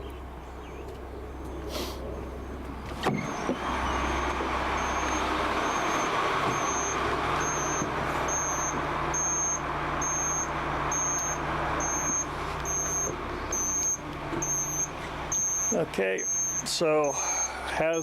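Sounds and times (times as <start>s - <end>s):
vehicle hum and hiss: 0.0s - 18.0s.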